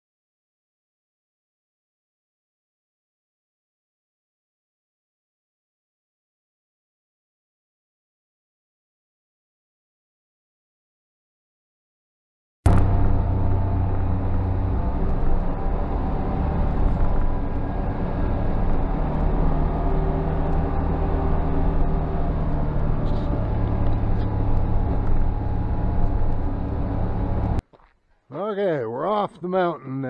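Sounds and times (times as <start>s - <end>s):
utv engine droning: 12.7s - 27.6s.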